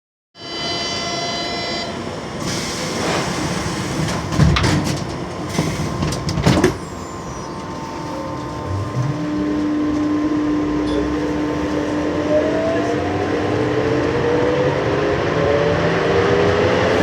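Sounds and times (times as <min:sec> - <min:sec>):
train doors knocking: 0:03.9 - 0:06.9
steady high whine: 0:06.0 - 0:15.3.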